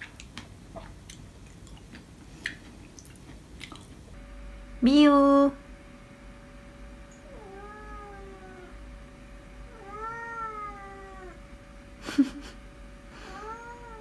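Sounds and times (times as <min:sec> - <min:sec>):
cat meowing: 0:07.3 - 0:08.7, 0:09.7 - 0:11.4, 0:13.3 - 0:14.0.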